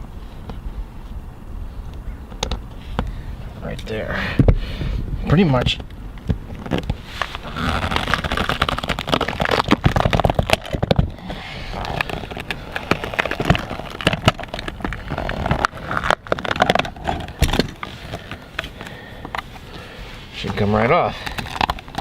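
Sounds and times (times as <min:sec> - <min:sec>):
scraping putty sealant: 0:06.5 - 0:19.5.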